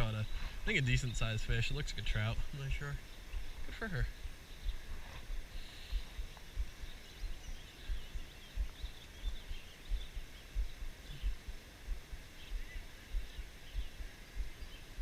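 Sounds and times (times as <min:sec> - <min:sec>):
faint bird chirps: 0:00.0 - 0:15.0
low dull thumps: 0:03.4 - 0:15.0.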